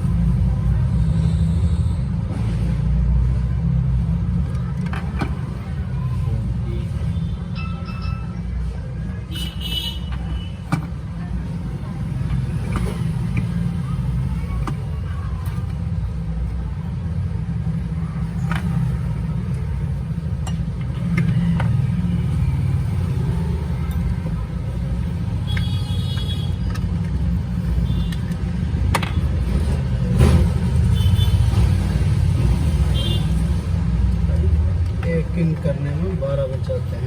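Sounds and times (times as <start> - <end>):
high chirping tones: 7.5 - 8.6.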